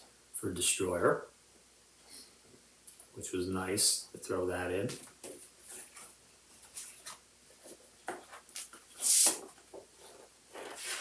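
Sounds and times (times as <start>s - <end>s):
paper rustling and sliding: 5.3s - 11.0s
loud paper swish: 9.0s - 9.6s, 10.6s - 11.0s.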